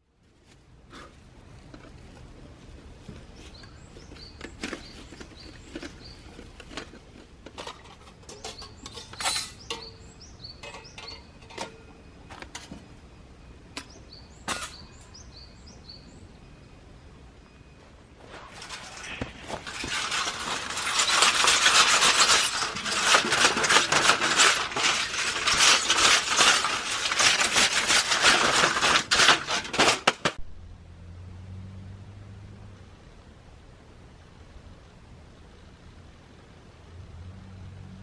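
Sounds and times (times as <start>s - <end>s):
outdoor background noise: 0.0s - 38.0s
sharp clicks and knocks: 18.6s - 30.4s.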